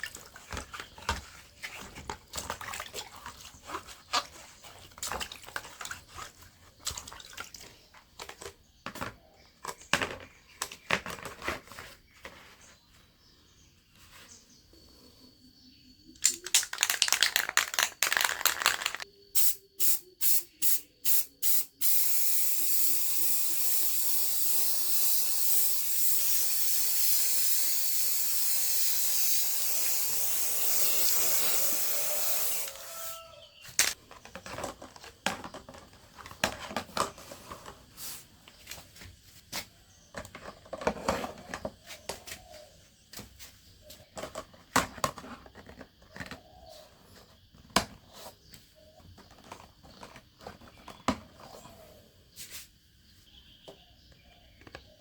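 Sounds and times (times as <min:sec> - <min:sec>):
clicks and knocks: 0:16.2 - 0:19.0
spray can rattle: 0:16.2 - 0:32.9
spray paint hissing: 0:16.2 - 0:33.2.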